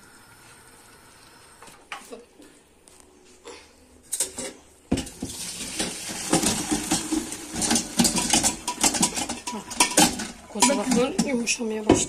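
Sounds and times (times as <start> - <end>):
metal pot and strainer clattering: 4.1 - 12.0
pouring liquid: 5.1 - 8.8.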